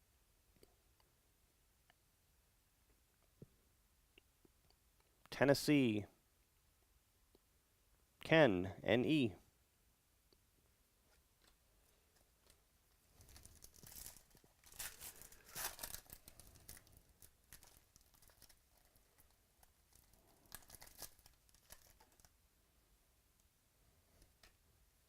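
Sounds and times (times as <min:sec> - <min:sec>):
foil wrapper tearing and crinkling: 0:13.2 - 0:22.3.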